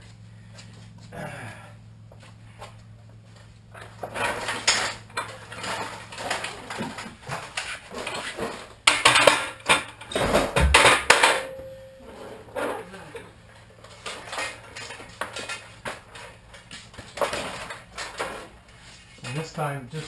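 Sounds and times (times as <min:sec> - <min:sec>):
creepers clattering on floor: 0:03.8 - 0:19.5
heavy thump: 0:10.1 - 0:12.0.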